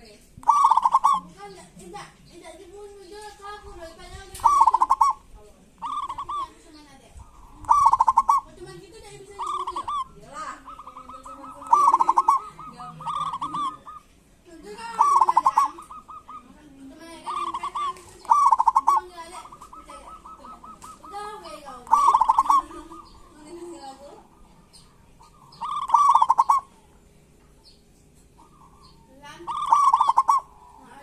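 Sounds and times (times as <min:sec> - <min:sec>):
dove rattling calls: 0:00.0 - 0:31.0
dove wavering coos: 0:00.0 - 0:31.0.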